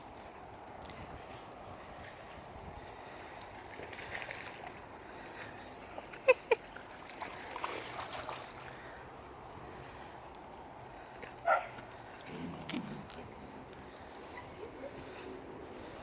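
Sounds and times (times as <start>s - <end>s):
dog barking: 11.4s - 11.8s.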